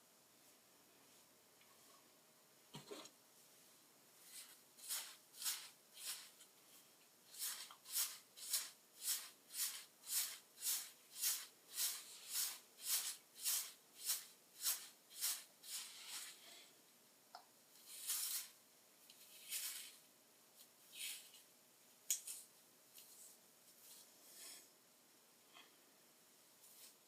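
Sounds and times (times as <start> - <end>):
hair being combed: 4.2 - 6.5, 7.3 - 16.4, 17.8 - 20.0.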